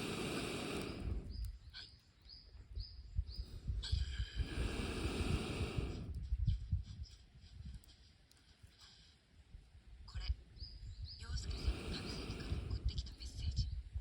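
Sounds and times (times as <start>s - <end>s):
rushing surges of noise: 0.0s - 1.1s
campfire crackling and popping: 0.0s - 2.4s
bird chirping: 0.0s - 3.6s, 10.5s - 12.6s.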